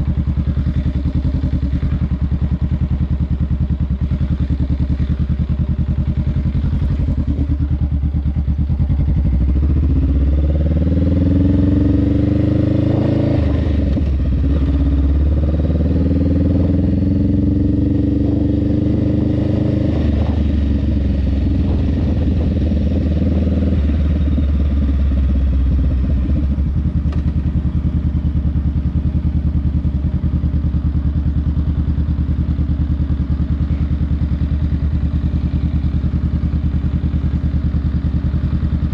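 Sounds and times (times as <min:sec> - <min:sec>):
motorcycle engine pulling away: 0:06.2 - 0:28.0.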